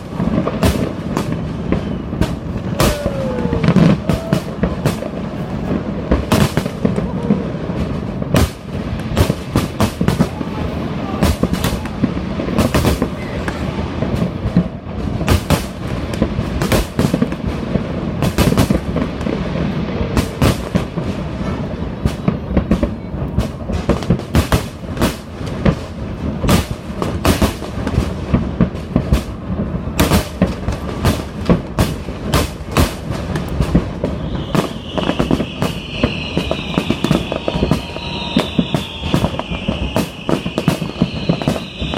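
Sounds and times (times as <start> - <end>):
fireworks booms and bangs: 0.0 - 41.9
high whistling tone: 34.1 - 41.9.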